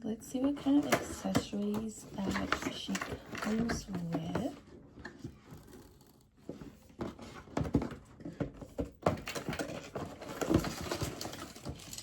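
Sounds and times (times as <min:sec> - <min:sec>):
box and packaging handled: 0:00.3 - 0:12.0
packaging rustling: 0:08.7 - 0:12.0.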